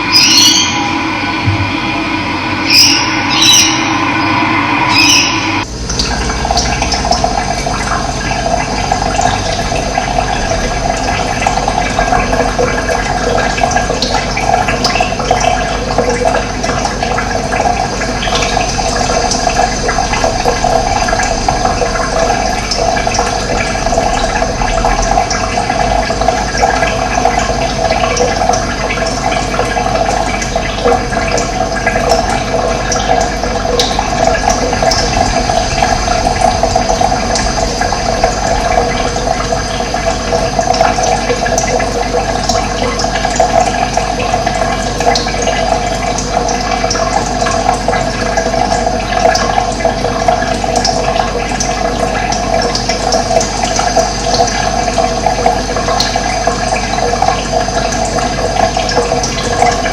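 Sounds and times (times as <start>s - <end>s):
running water: 0.0s - 59.9s.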